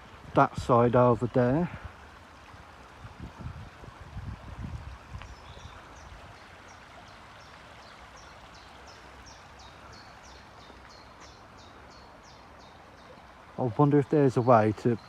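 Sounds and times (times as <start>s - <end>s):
stream running: 0.0s - 15.0s.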